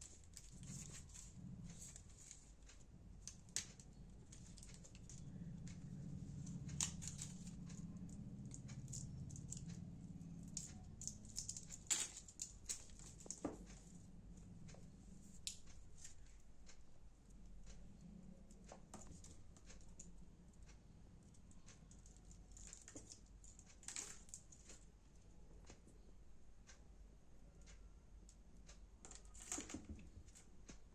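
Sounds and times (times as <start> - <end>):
low steady hum: 0.0 - 30.9.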